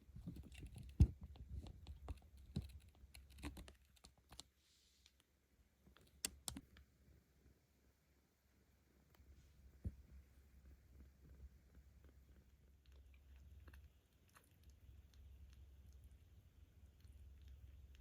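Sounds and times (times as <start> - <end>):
small clicks and taps: 0.2 - 4.5, 5.9 - 6.9.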